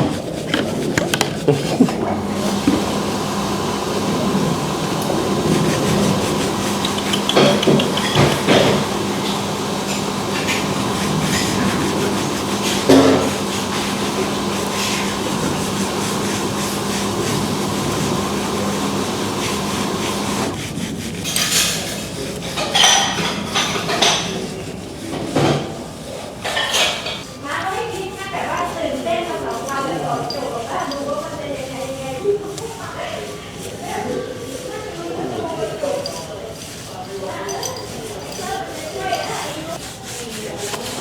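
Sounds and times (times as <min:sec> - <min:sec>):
electric motor hum: 0:01.9 - 0:20.7.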